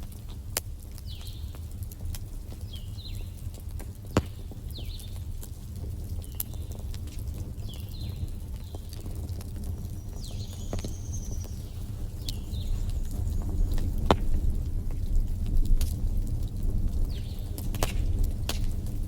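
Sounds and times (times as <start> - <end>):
fire crackles and pops: 0.0 - 19.0
wood fire rumbling: 0.0 - 19.0.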